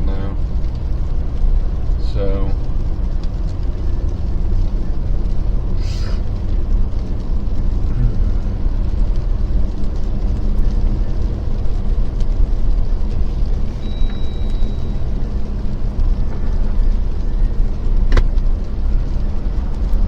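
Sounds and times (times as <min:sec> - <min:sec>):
engine and tyres rumbling on snow: 0:00.0 - 0:20.0
brief hiss: 0:05.8 - 0:06.2.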